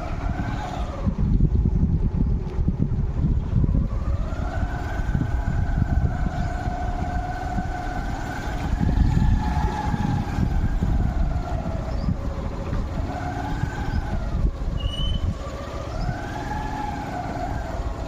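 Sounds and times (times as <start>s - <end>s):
vehicle engine droning: 0.0s - 18.0s.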